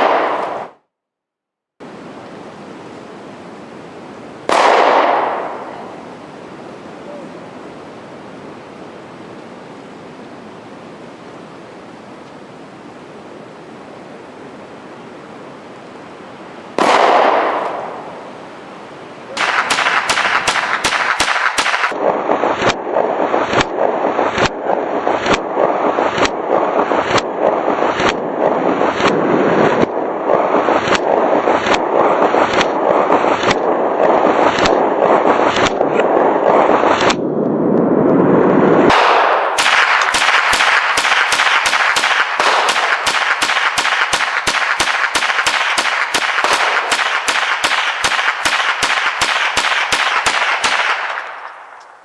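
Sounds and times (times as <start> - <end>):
gunshots: 0.0 - 0.8, 4.5 - 5.8, 16.8 - 18.1, 19.3 - 37.2, 38.8 - 51.8
open-air hiss: 1.8 - 23.4.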